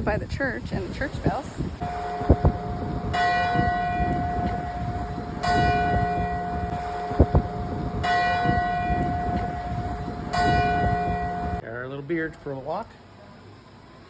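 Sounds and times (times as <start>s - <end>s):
church bell tolling: 1.8s - 11.6s.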